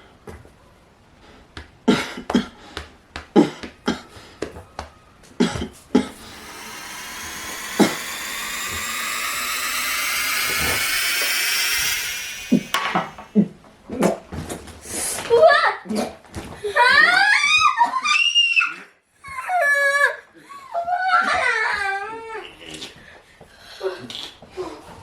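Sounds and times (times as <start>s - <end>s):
machine-like whine: 6.1s - 13.4s.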